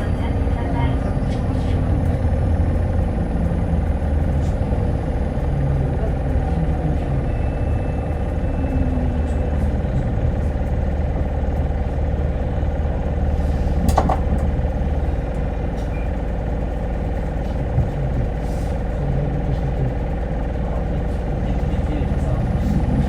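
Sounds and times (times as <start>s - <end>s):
bus engine drone: 0.0s - 23.0s
sharp clunk: 13.9s - 14.3s.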